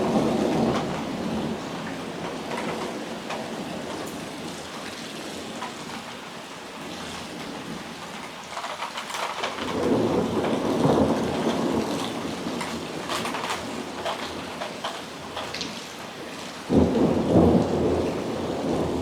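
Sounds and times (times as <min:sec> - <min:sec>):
rolling thunder: 0:00.0 - 0:04.4, 0:09.5 - 0:14.2, 0:16.7 - 0:19.0
rain falling: 0:00.0 - 0:19.0.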